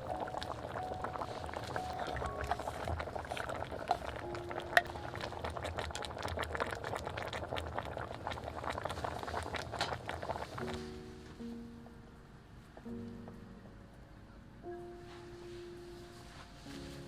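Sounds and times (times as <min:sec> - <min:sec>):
stew bubbling: 0:00.0 - 0:10.9.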